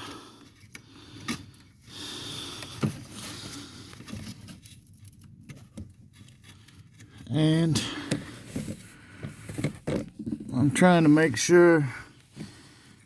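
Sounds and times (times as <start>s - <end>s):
plastic part rustling: 2.5s - 10.8s.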